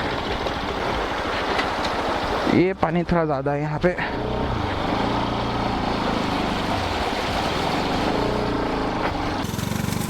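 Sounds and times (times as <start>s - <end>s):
motorcycle engine running: 4.2s - 10.0s
water splashing: 5.0s - 8.6s.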